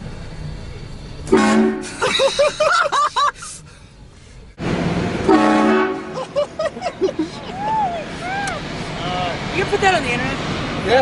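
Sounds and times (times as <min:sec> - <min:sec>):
train air horn blasting: 0:01.3 - 0:01.9, 0:05.2 - 0:06.2.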